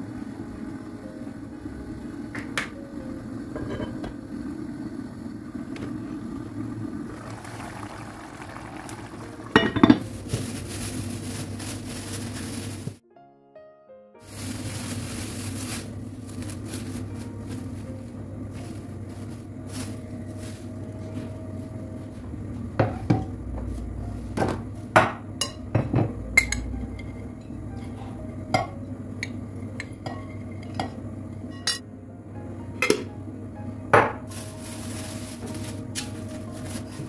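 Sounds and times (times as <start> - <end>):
steady low hum: 0.0 - 7.4, 14.4 - 37.0
dishes and pots clattering: 3.6 - 4.2, 7.8 - 10.4, 24.4 - 31.8.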